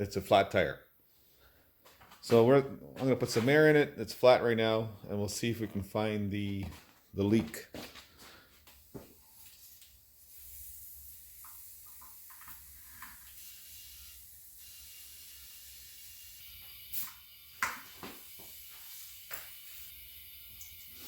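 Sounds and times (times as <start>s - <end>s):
compressed air hissing: 9.2s - 21.0s.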